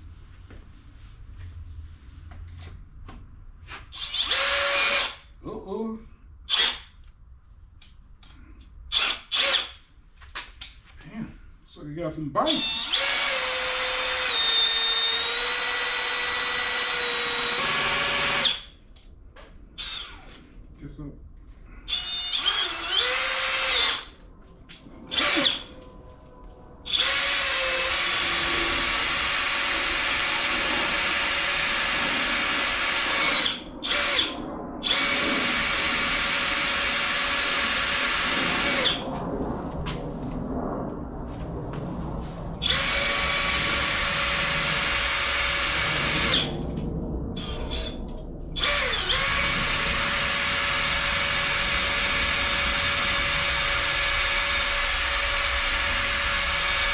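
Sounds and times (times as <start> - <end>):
power drill running in bursts: 4.0 - 5.2, 8.9 - 9.7, 12.6 - 18.7, 21.9 - 24.1, 25.1 - 25.7, 26.9 - 39.0, 42.6 - 46.6, 48.6 - 56.9.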